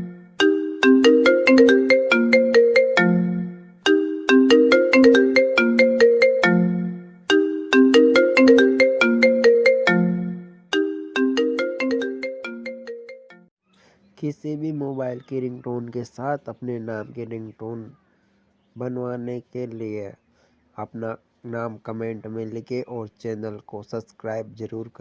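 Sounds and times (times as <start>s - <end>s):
bell-like phone ringtone melody: 0.0s - 13.5s.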